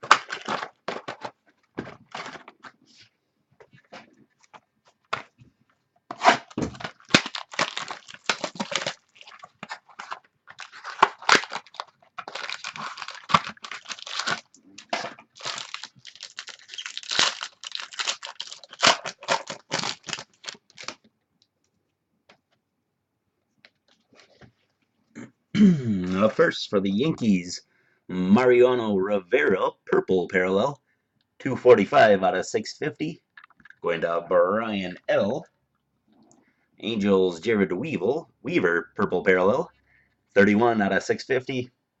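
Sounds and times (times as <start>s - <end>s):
plastic wrapping tearing and crinkling: 0.0s - 1.2s, 6.1s - 21.1s.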